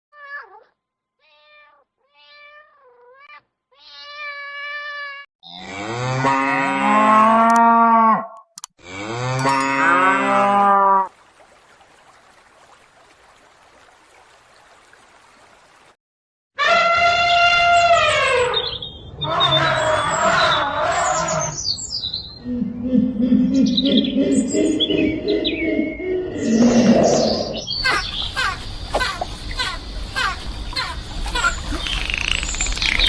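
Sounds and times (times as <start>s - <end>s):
cat meowing: 0.2s - 5.3s
cattle mooing: 5.5s - 11.1s.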